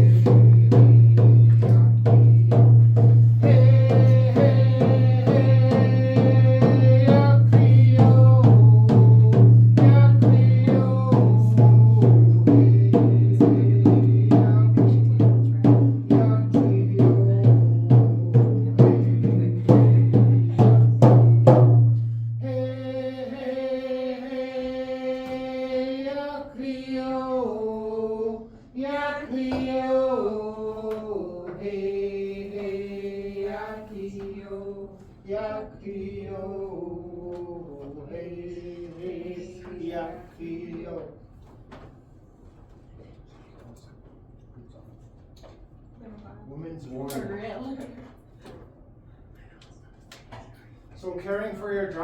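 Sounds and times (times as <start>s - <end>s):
hand drum beating: 0.0s - 22.0s
person chanting a song: 0.0s - 40.8s.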